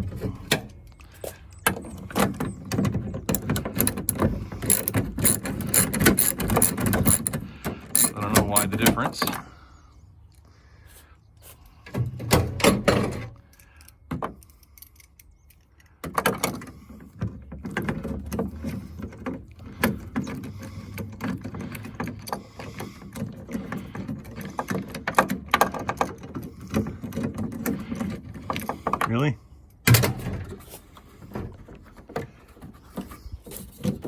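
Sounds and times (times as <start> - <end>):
wrench clicking and rattling: 3.3 - 8.9.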